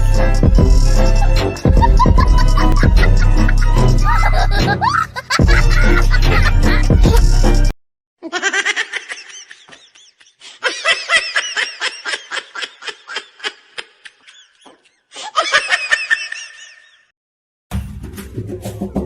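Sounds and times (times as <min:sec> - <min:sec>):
loud music: 0:00.0 - 0:07.7, 0:17.7 - 0:19.0
high-pitched laughter: 0:01.0 - 0:07.3, 0:08.2 - 0:17.1.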